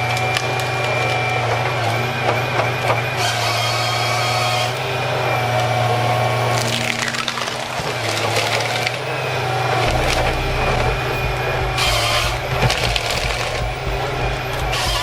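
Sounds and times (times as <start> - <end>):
machine engine running: 4.8 - 15.0.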